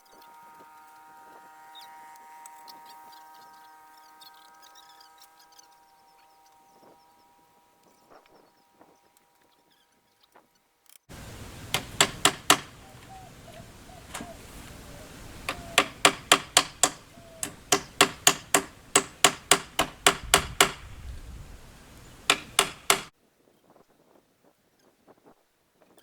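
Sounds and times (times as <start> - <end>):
hammer blows: 11.1 - 23.1.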